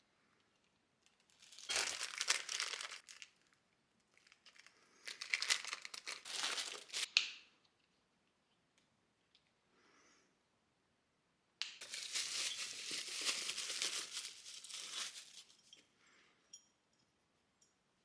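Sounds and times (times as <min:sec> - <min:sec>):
plastic bag crinkling: 0:01.3 - 0:03.5, 0:04.2 - 0:07.1, 0:11.8 - 0:15.7.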